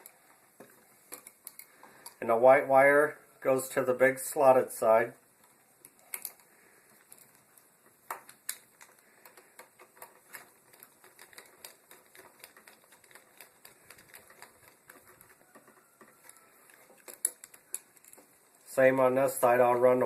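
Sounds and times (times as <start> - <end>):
screwdriver clicking on metal screws: 5.8 - 18.3.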